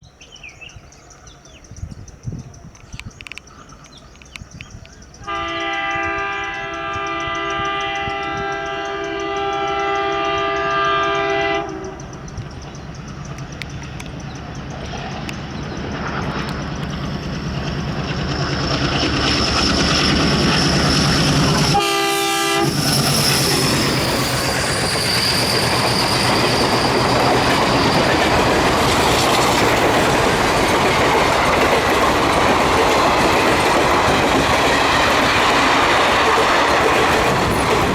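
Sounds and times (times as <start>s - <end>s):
diesel locomotive engine chugging: 5.0s - 37.9s
train horn blast: 5.2s - 12.2s, 20.9s - 24.6s
train wheels clattering over rails: 5.6s - 37.9s.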